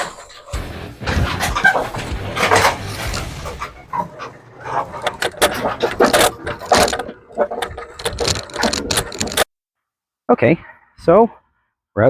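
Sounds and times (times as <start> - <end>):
lawn mower rattling: 0.0 - 9.4.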